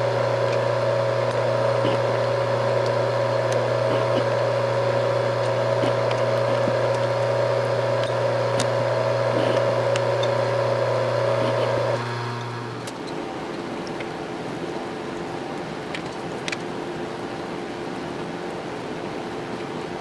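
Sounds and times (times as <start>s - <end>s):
milling machine high whine: 0.0s - 20.0s
milling machine low hum: 0.0s - 20.0s
small ticks: 5.4s - 7.2s.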